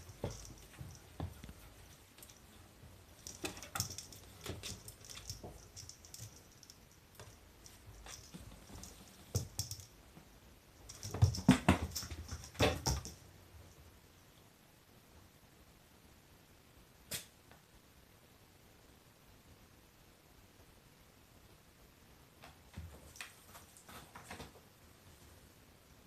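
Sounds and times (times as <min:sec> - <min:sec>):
kitten paws tapping and scuffing: 0:00.0 - 0:10.2, 0:10.8 - 0:13.2, 0:22.4 - 0:24.6.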